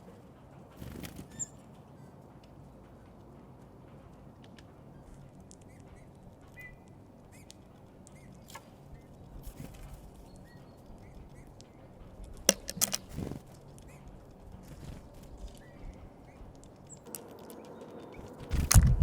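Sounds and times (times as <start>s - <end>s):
soft bird calls: 0.0s - 18.7s
beaks tapping at feeder: 5.4s - 18.2s.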